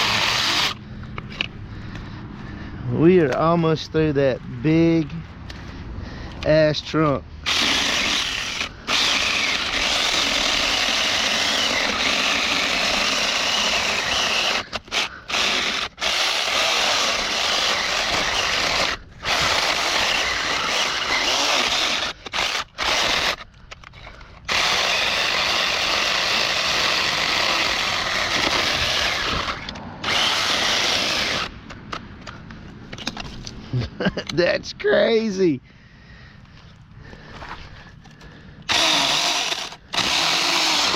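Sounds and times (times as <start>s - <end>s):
electric chainsaw cutting wood: 0.0s - 0.8s, 7.4s - 23.4s, 24.4s - 31.6s, 38.6s - 40.9s.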